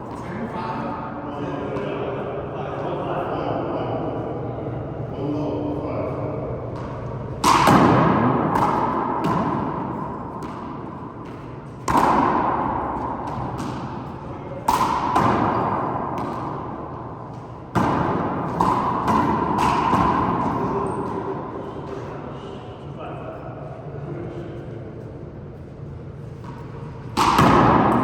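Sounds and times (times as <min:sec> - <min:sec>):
handball smacks echoing in court: 0:06.7 - 0:22.2, 0:26.3 - 0:28.0.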